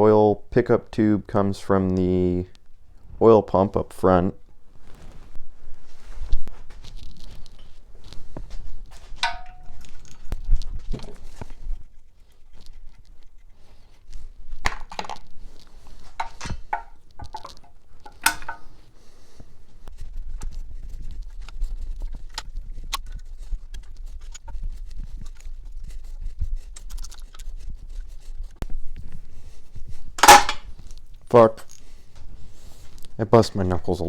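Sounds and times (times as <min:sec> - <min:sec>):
metal tools clanking: 0:09.2 - 0:10.2, 0:16.2 - 0:18.8, 0:30.2 - 0:30.7.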